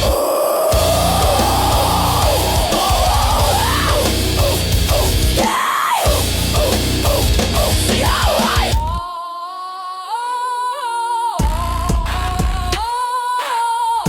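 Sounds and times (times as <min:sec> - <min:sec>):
heavy bass and drums: 0:00.0 - 0:09.0, 0:11.4 - 0:12.8
heavy metal lead guitar: 0:00.0 - 0:09.0.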